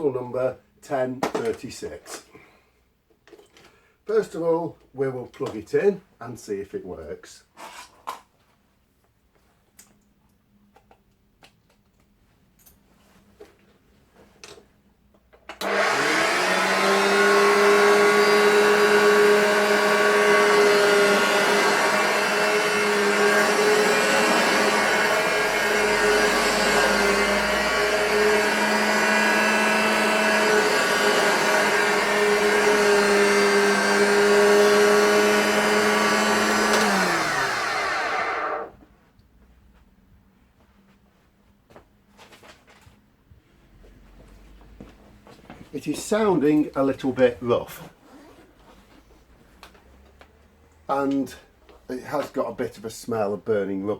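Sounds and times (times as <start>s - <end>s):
vacuum cleaner motor running: 15.6s - 38.7s.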